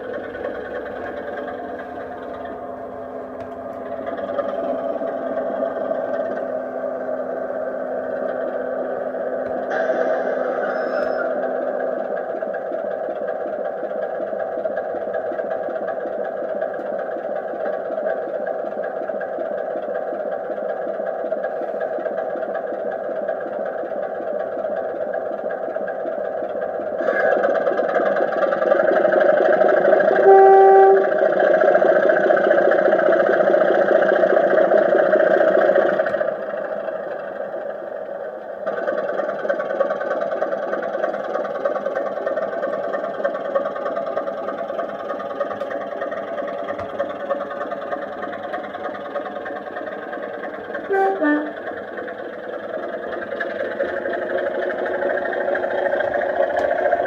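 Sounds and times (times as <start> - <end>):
model locomotive diesel engine sound: 0.0 - 57.0
locomotive horn toot: 30.1 - 31.2, 50.9 - 51.6.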